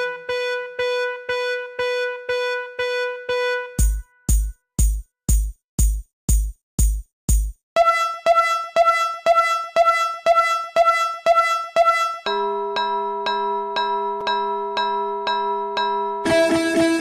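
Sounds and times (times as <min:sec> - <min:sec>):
bell-like synth ding: 0:11.4 - 0:17.0.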